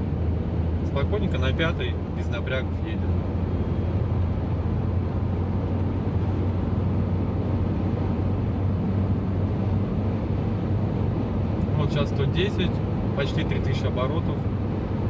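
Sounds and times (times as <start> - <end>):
car engine drone: 0.0 - 15.0
road and tyre noise: 0.0 - 15.0.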